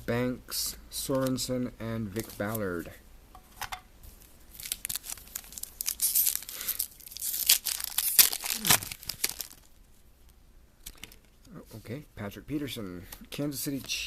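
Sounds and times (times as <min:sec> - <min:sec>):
foil wrapper tearing and crinkling: 0:04.5 - 0:09.7.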